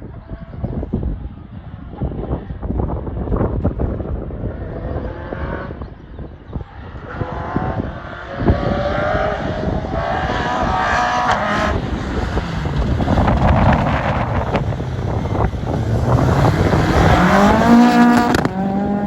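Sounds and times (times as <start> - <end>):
car engine revving hard: 7.0 - 19.0
heavy low rumble: 9.3 - 19.0.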